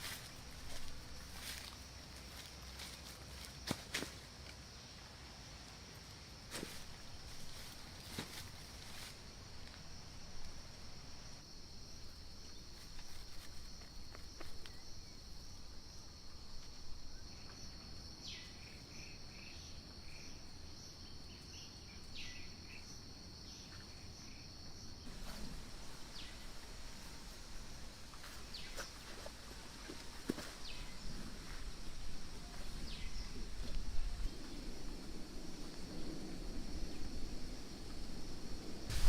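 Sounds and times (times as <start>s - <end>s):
high-pitched insect chorus: 0.0s - 39.0s
short insect chirps: 21.0s - 39.0s.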